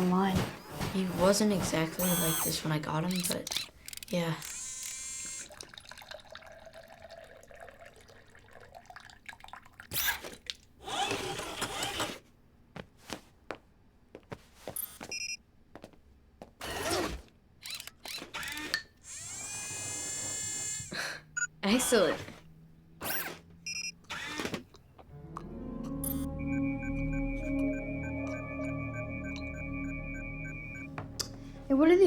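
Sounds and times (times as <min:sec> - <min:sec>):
robotic whirring: 0:00.3 - 0:05.5
electronic blips: 0:00.4 - 0:03.4, 0:25.8 - 0:31.6
pitched electronic hum: 0:25.2 - 0:31.8.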